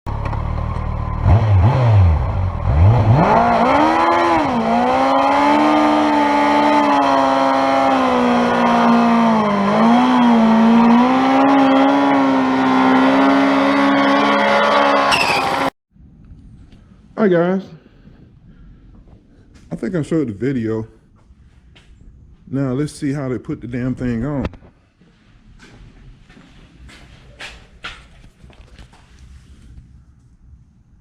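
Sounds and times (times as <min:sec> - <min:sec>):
engine revving hard: 0:01.1 - 0:15.7.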